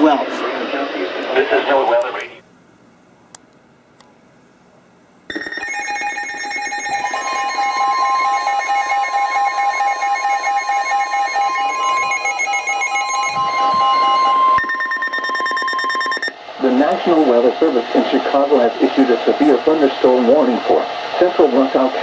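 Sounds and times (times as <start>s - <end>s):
pulsing tone: 5.3s - 16.4s
steady warning alarm tone: 5.3s - 21.6s.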